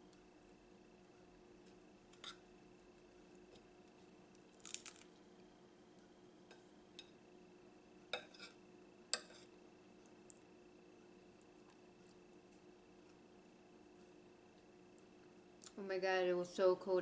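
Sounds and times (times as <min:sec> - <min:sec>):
faint steady hum: 0:00.0 - 0:17.0
crunching bites: 0:04.4 - 0:05.1.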